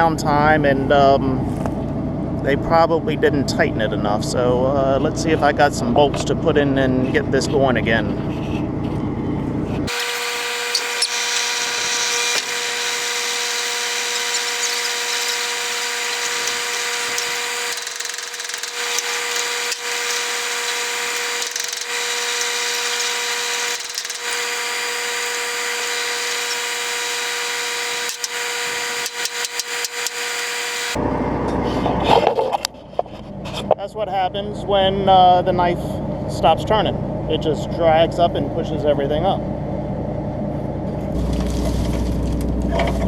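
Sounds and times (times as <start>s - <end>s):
combine header machinery whine: 0.0s - 43.0s
rattles and clicks: 10.7s - 24.5s.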